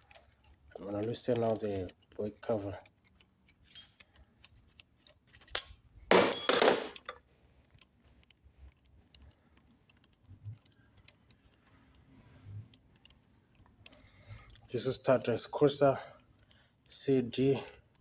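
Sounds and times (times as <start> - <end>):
small metallic clicks and taps: 0.0 - 5.8, 6.9 - 18.0.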